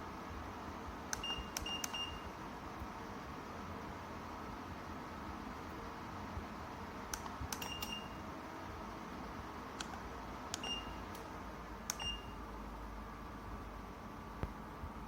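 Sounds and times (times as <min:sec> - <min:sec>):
heater control clicks: 0:01.1 - 0:02.0, 0:07.1 - 0:08.0, 0:09.8 - 0:12.2.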